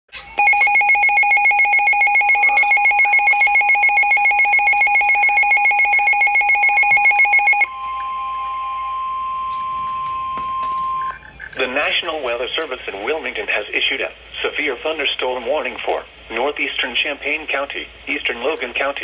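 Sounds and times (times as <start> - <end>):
steady alarm tone: 0.2 - 11.6
rapidly pulsing alert beep: 0.4 - 7.9.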